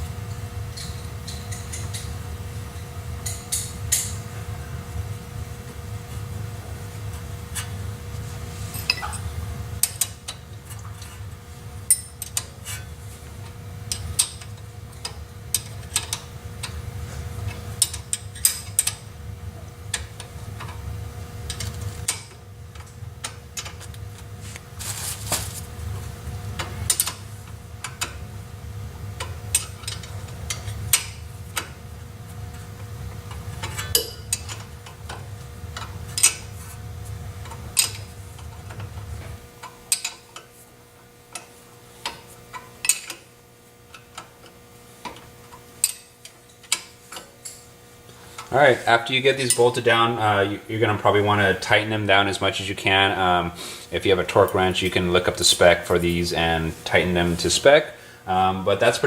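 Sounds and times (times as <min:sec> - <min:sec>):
steady low hum: 0:00.0 - 0:59.0
wrench metallic clicks: 0:39.6 - 0:40.5, 0:45.8 - 0:47.6.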